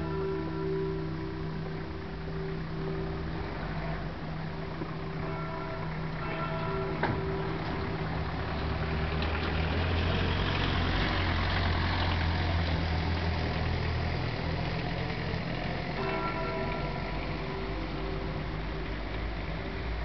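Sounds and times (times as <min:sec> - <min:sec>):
church bells humming: 0:00.0 - 0:20.0
vehicle engine passing by: 0:07.4 - 0:16.0.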